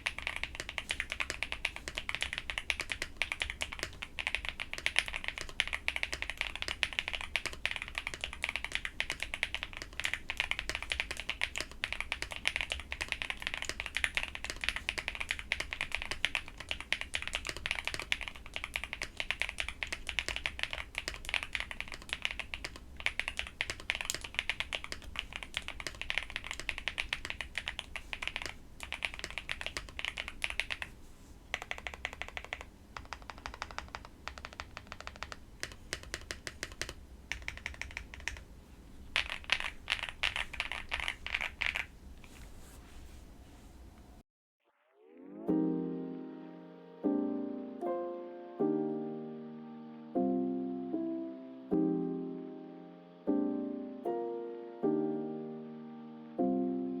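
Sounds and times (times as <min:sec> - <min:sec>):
mechanical keyboard typing: 0:00.0 - 0:30.9, 0:31.5 - 0:38.5, 0:39.2 - 0:41.9.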